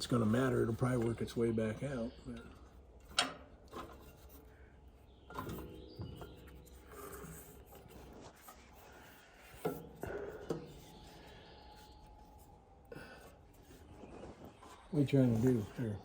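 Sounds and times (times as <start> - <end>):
rubbing and scraping: 3.0 - 12.8, 13.4 - 16.0.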